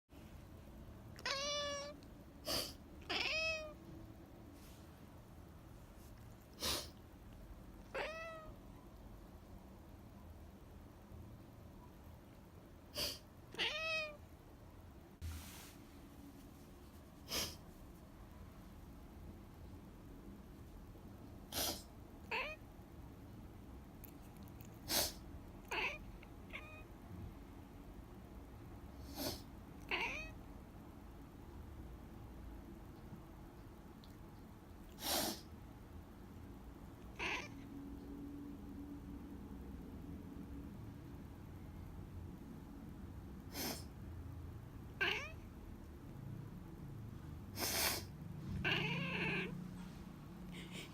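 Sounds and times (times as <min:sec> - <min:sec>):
cat meowing: 0:01.1 - 0:03.8, 0:07.8 - 0:08.6, 0:13.5 - 0:14.2, 0:22.2 - 0:22.6, 0:25.6 - 0:26.9, 0:29.8 - 0:30.4, 0:37.0 - 0:37.7, 0:44.9 - 0:45.5, 0:48.6 - 0:49.6
person sniffling: 0:06.5 - 0:07.0, 0:17.2 - 0:17.7, 0:35.0 - 0:35.5, 0:47.6 - 0:48.1, 0:50.5 - 0:50.9.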